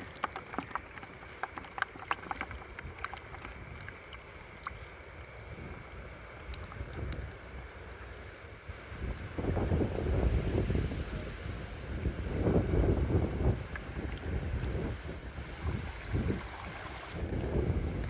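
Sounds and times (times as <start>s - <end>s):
water splashes and clicks: 0.0s - 7.7s, 13.6s - 14.4s
steady high hiss: 3.6s - 18.0s
wind gusting on microphone: 8.6s - 18.0s.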